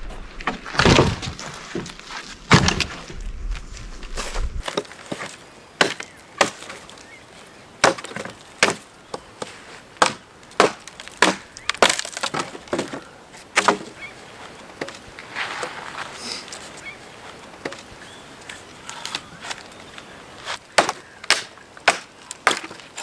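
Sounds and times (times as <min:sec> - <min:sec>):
wood being struck and split: 0:00.0 - 0:03.4, 0:04.6 - 0:06.8, 0:07.8 - 0:08.8, 0:10.0 - 0:14.0, 0:20.8 - 0:23.0.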